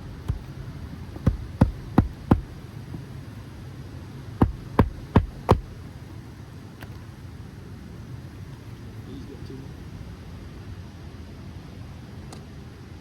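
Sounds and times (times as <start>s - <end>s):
hammer striking nail: 0.1s - 0.6s, 1.2s - 2.6s, 4.4s - 5.8s.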